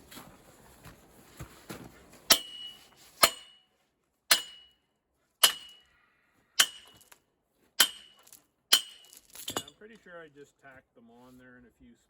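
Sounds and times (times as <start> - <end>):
hammer striking steel: 2.3 - 3.7, 4.3 - 4.8, 5.4 - 5.9, 6.6 - 7.2, 7.8 - 9.7.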